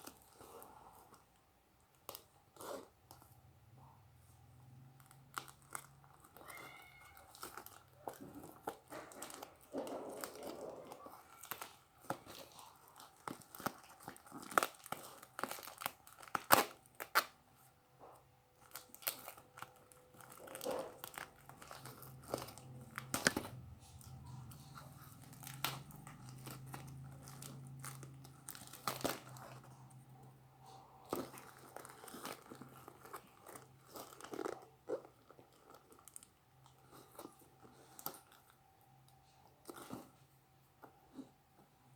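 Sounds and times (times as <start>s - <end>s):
packaging being torn and crinkled: 5.0s - 17.4s, 18.6s - 29.8s.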